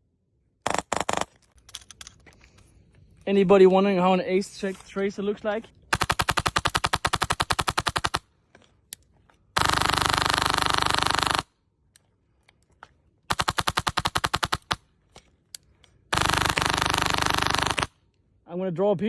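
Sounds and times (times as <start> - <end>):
airsoft rifle full-auto bursts: 0.6 - 1.3, 5.9 - 8.3, 9.6 - 11.5, 13.3 - 14.8, 16.1 - 18.0.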